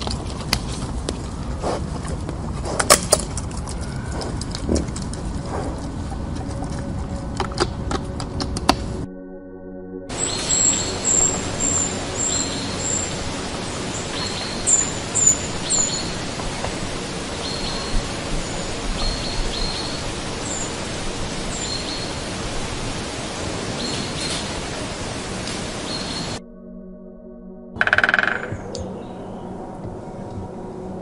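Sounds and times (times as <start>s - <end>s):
steady outdoor hiss: 0.0s - 9.1s, 10.1s - 26.4s, 27.8s - 31.0s
high bird chirps: 10.1s - 16.4s.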